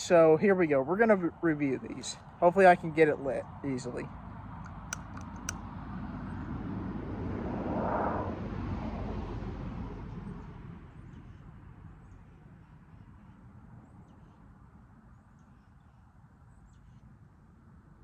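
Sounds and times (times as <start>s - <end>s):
lighter clicking: 4.7s - 5.6s
vehicle passing by: 6.3s - 10.8s.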